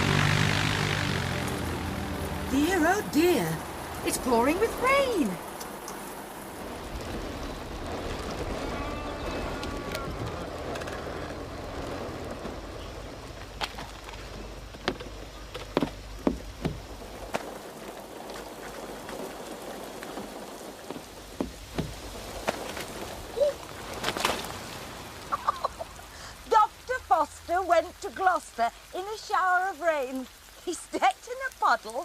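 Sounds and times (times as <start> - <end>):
low rumble: 0.0 - 5.6, 6.3 - 15.3
heavy rain: 0.0 - 32.0.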